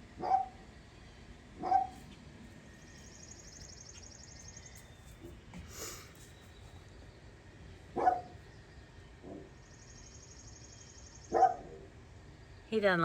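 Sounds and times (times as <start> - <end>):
dog barking: 0.2 - 0.6, 1.6 - 2.0, 8.0 - 8.4, 11.3 - 11.9.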